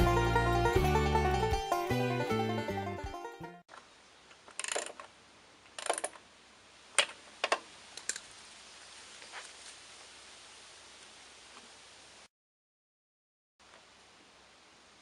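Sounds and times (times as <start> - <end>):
banjo music: 0.0 - 3.6
faint hiss: 3.7 - 12.3.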